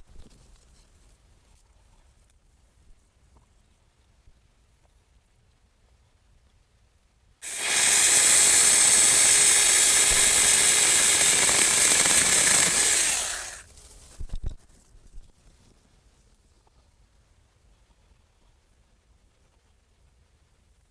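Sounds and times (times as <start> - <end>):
electric chainsaw running: 7.4 - 13.7.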